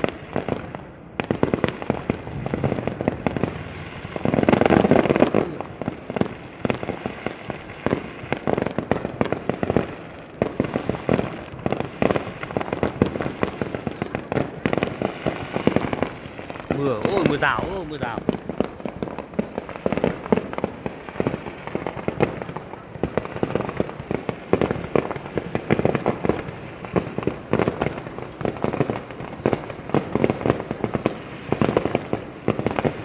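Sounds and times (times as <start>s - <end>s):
fireworks bangs and crackles: 0.0s - 33.0s.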